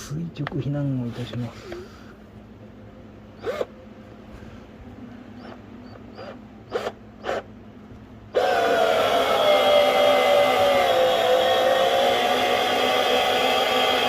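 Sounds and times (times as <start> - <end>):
electric jack motor whining: 3.4 - 3.8, 5.4 - 7.5, 8.3 - 14.0
short squeaks and clicks: 5.4 - 7.5.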